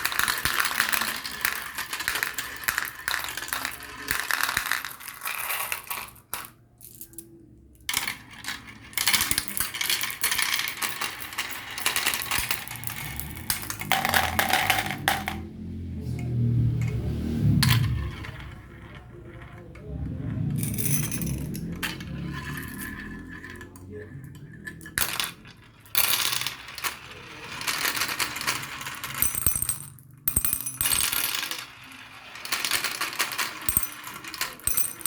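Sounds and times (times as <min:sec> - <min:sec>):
marbles rolling and clattering: 0:00.0 - 0:15.6, 0:16.7 - 0:35.0.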